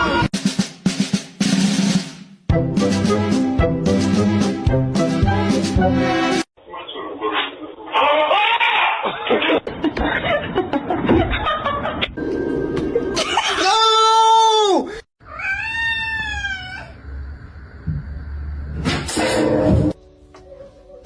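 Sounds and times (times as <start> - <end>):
cats meowing: 15.2 - 17.0.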